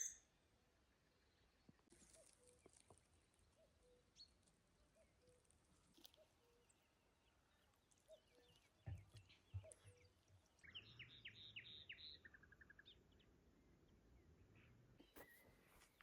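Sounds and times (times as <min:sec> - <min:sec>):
faint high bird chirps: 0:00.0 - 0:00.3, 0:08.0 - 0:13.3, 0:14.5 - 0:16.0.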